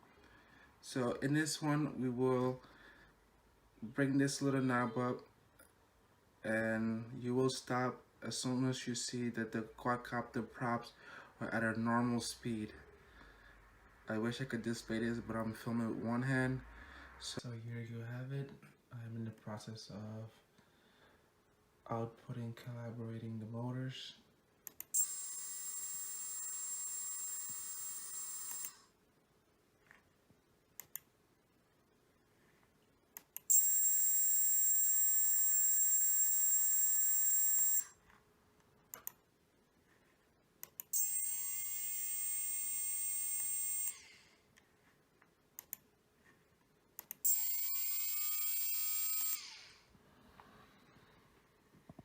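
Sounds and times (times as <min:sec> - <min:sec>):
faint clicks: 0:30.8 - 0:31.1, 0:45.6 - 0:45.8
drone motors whining: 0:47.3 - 0:49.8.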